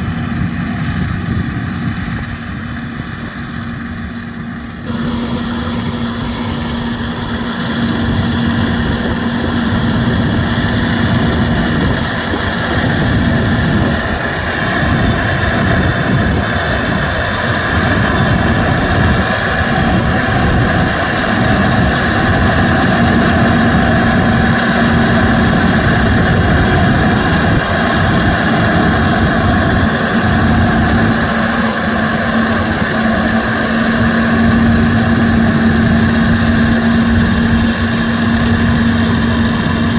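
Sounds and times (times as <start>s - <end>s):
combine harvester running: 0.0s - 39.9s.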